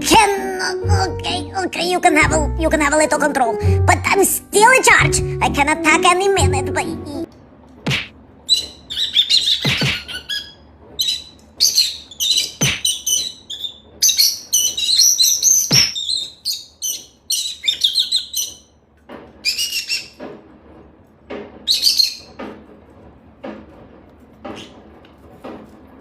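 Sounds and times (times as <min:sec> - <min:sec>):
sharp knocks: 0:07.8 - 0:08.2, 0:09.6 - 0:10.2, 0:12.5 - 0:13.2, 0:15.7 - 0:16.0
parrot chirping and squawking: 0:08.5 - 0:18.8, 0:19.4 - 0:20.2, 0:21.6 - 0:22.4.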